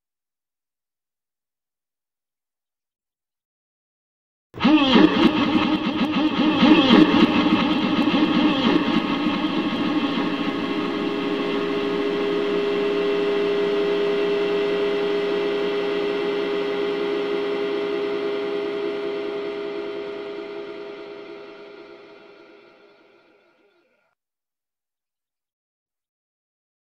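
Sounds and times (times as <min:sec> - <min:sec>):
buzzing keyboard drone: 0:04.6 - 0:24.0.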